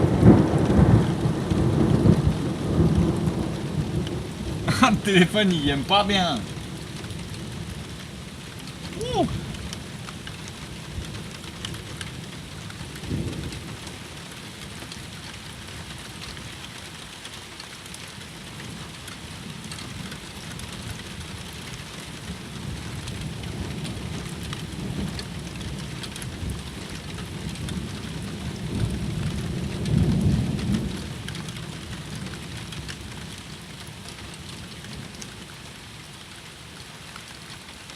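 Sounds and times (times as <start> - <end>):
thunder rumbles: 0.0 - 5.1, 22.6 - 32.3
rain falling: 0.0 - 37.9.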